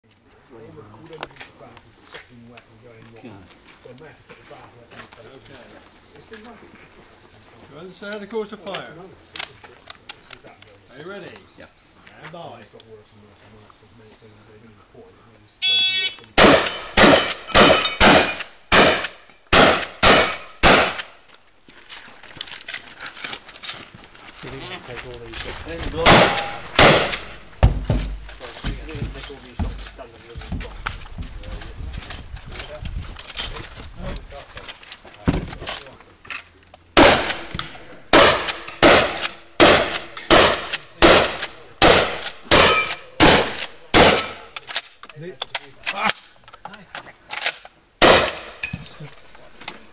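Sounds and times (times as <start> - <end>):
shotgun shots: 16.4 - 21.2, 25.9 - 28.1, 37.0 - 44.5, 48.0 - 48.6.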